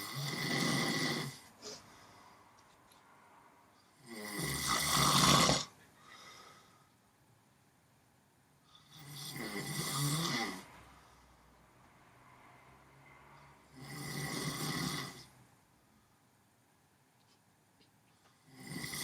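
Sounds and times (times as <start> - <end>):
man snoring loudly: 0.0 - 1.5, 4.0 - 5.7, 8.8 - 10.7, 13.7 - 15.3, 18.5 - 19.0.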